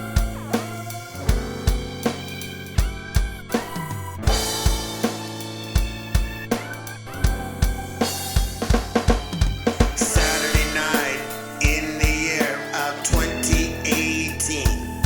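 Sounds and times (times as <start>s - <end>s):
kick drum beat: 0.0s - 12.4s, 13.1s - 15.0s
higher melodic line: 0.0s - 15.0s
sustained chords: 0.0s - 15.0s
snare drum hits: 8.4s - 15.0s.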